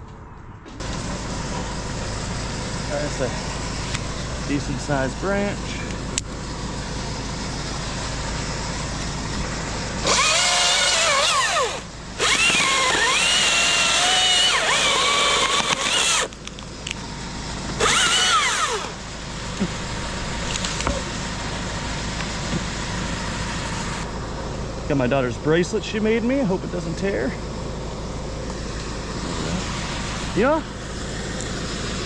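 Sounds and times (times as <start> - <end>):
chainsaw cutting branch: 10.0 - 16.3, 17.8 - 19.0.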